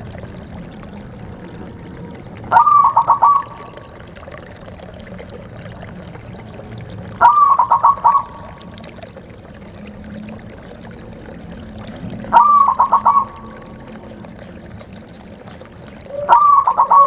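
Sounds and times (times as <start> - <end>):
dove cooing: 2.5 - 4.0, 7.2 - 8.5, 11.9 - 14.6, 15.2 - 17.0.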